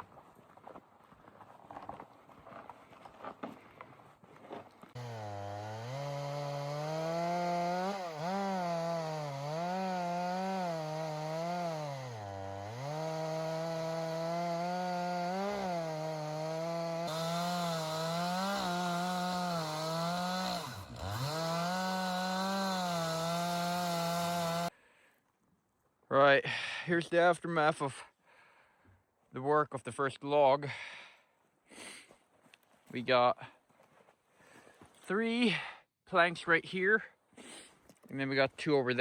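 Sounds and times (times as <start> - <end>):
chainsaw cutting a log: 4.9 - 24.7.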